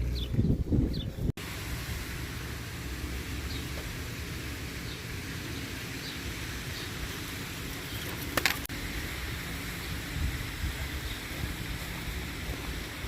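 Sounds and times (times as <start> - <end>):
wind buffeting microphone: 0.0 - 1.3, 9.8 - 13.0.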